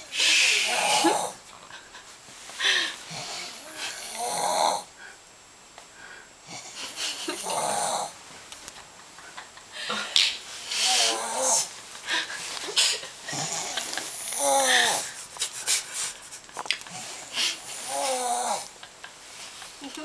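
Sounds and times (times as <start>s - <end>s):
person snoring: 0.0s - 1.4s, 3.1s - 5.0s, 6.4s - 8.2s, 10.6s - 11.8s, 13.3s - 15.2s, 16.9s - 18.8s.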